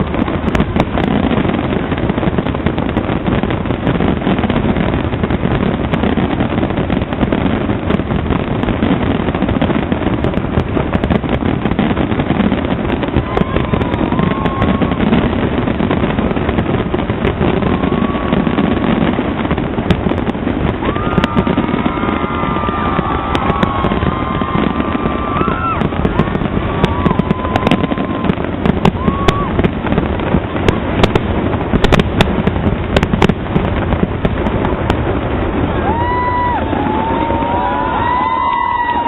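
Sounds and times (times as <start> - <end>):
fireworks bursting and crackling: 0.0 - 39.0
rising firework whistles: 0.0 - 39.0.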